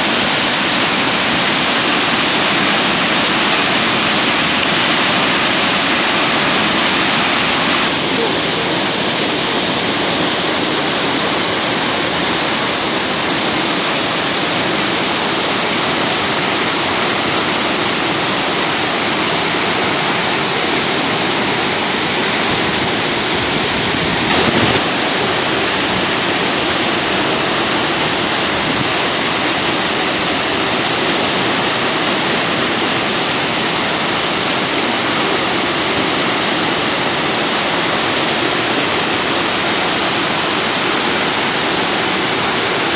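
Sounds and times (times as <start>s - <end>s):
waterfall rushing: 0.0s - 42.9s.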